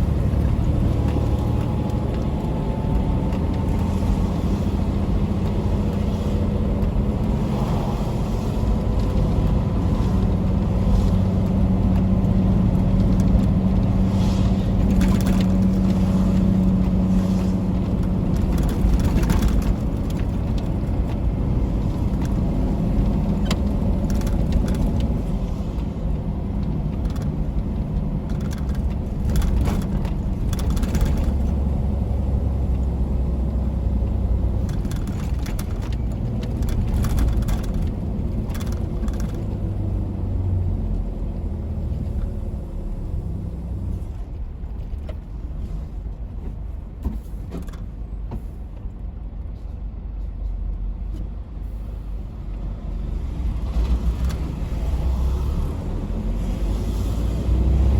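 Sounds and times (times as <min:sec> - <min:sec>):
truck engine and road rumble: 0:00.0 - 0:57.9
sharp clicks and rattles: 0:17.8 - 0:31.8, 0:34.5 - 0:40.0.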